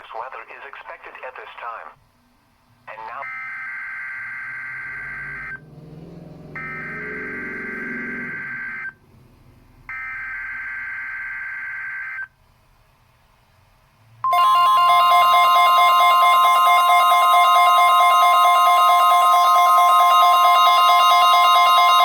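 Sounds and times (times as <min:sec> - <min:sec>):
steady warning alarm tone: 0:03.2 - 0:05.6, 0:06.5 - 0:09.0, 0:09.9 - 0:12.3, 0:14.2 - 0:22.0.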